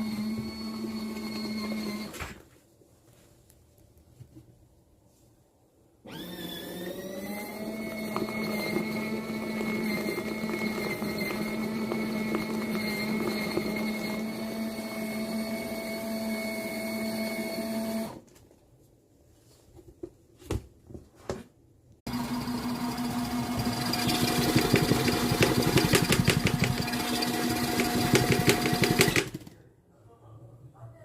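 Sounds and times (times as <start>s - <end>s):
washing machine motor humming: 0.0s - 2.1s, 6.1s - 18.2s, 22.1s - 29.5s.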